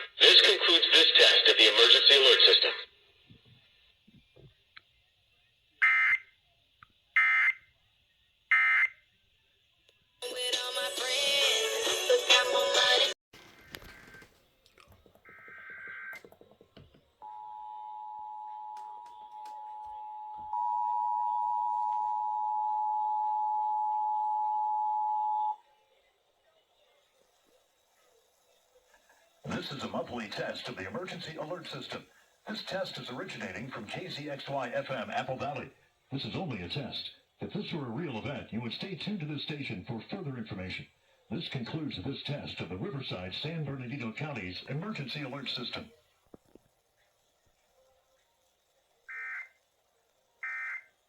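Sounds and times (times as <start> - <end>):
radio station music: 0.0 - 3.1, 10.2 - 14.4, 29.4 - 46.6.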